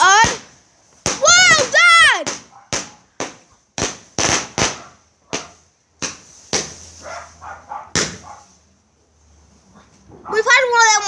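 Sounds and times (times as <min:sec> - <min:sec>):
firework bangs: 0:00.0 - 0:08.6.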